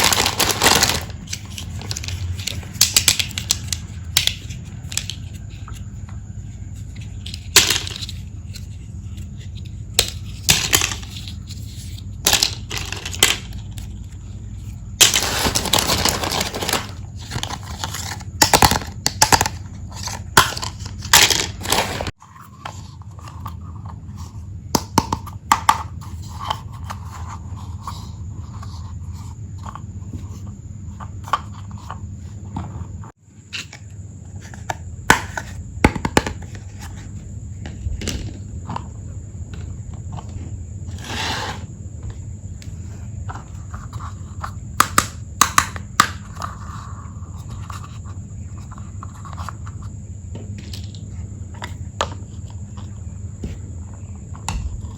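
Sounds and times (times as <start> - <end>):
packaging crinkling: 0.0 - 5.4, 15.0 - 18.9
steady low hum: 0.0 - 54.9.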